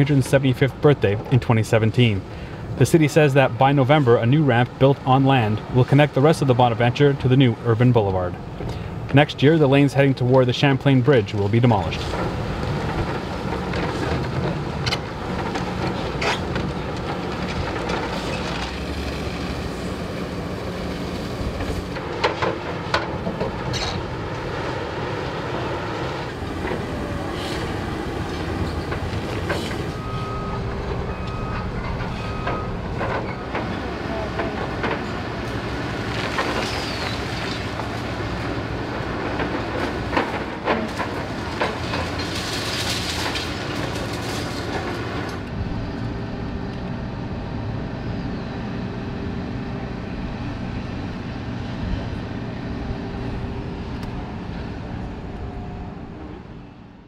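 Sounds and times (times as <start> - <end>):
heavy machinery diesel engines: 0.0 - 57.0
metallic clanks and knocks: 22.0 - 24.1.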